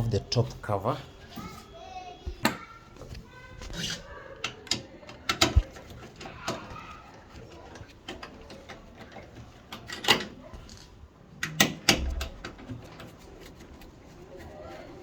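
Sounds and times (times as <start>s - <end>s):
knocks and clicks of tools: 4.4s - 6.7s, 7.7s - 13.1s.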